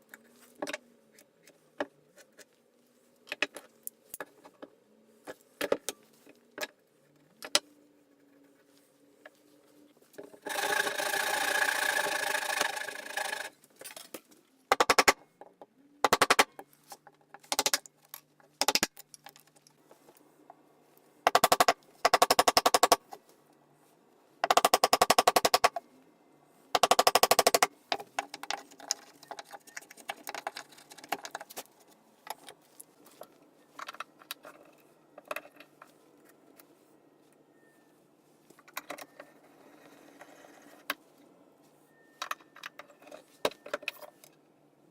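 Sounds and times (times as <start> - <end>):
power tool rattling: 10.4 - 13.5.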